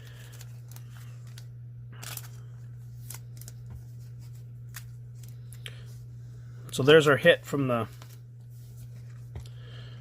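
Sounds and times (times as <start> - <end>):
cards sliding and rustling: 0.0 - 5.6, 7.8 - 9.5
low hum: 0.0 - 10.0.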